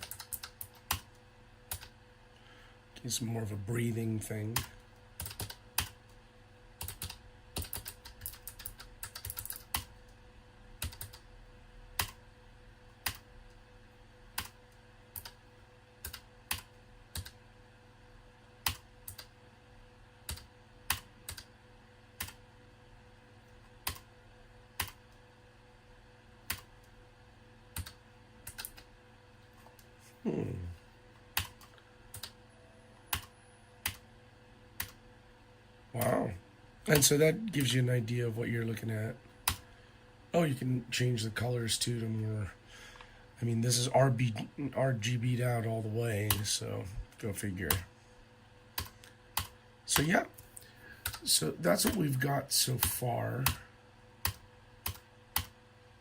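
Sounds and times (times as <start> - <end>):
mechanical keyboard clicks: 0.0 - 1.1, 6.8 - 9.9, 27.8 - 28.8, 54.2 - 55.6.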